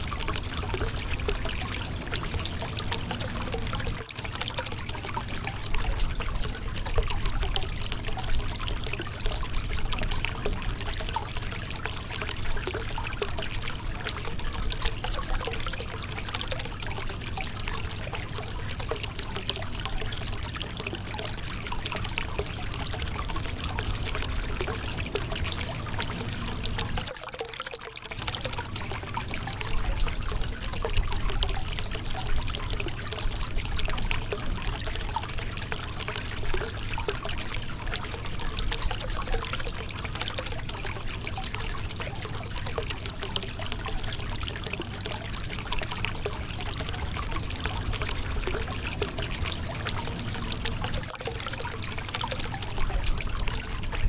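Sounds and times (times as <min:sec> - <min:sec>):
river water splashing over rocks: 0:21.0 - 0:27.4, 0:44.2 - 0:54.0.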